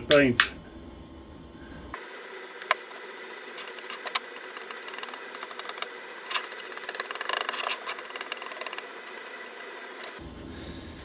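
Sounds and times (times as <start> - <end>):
paintbrush scrubbing: 3.6 - 10.8.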